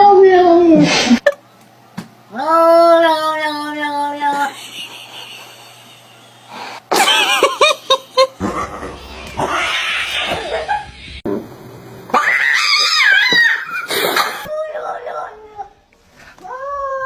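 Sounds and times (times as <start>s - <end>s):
laughter: 4.3s - 9.0s.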